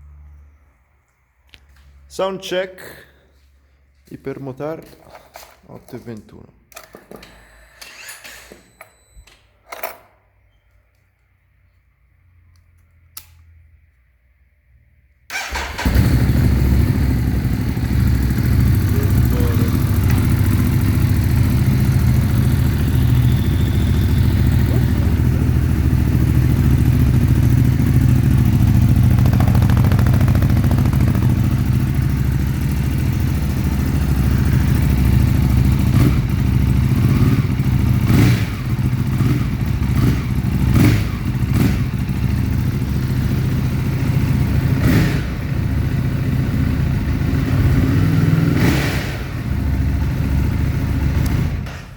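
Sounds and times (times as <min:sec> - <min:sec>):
motorcycle engine idling and revving: 0:15.3 - 0:51.9.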